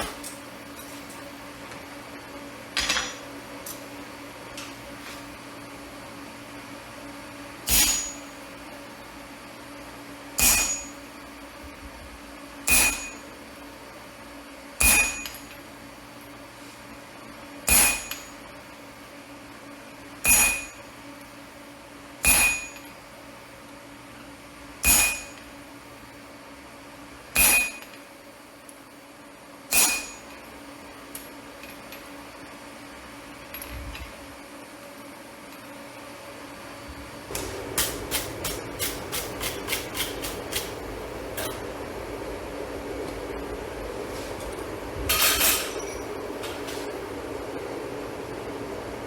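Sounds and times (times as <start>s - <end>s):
hammer striking steel: 7.7s - 8.3s, 10.4s - 11.0s, 12.7s - 13.2s, 14.8s - 15.4s, 17.7s - 18.3s, 22.3s - 22.9s, 24.8s - 25.4s, 27.4s - 27.9s, 29.7s - 30.3s
steady low hum: 19.6s - 49.0s.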